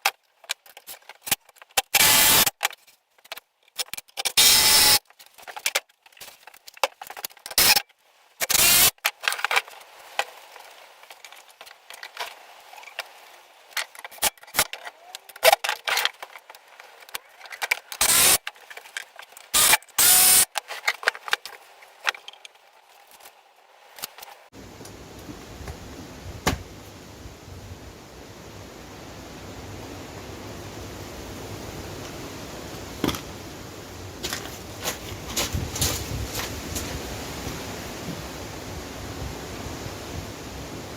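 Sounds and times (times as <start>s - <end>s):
clicks and knocks of tools: 0.0s - 10.3s.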